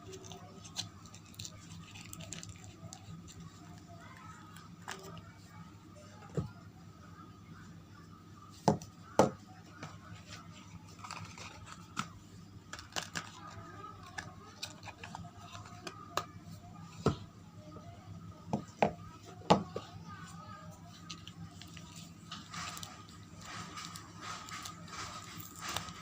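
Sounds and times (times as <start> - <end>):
wrapping crinkling: 0.0 - 5.2, 10.8 - 12.1, 20.9 - 26.0.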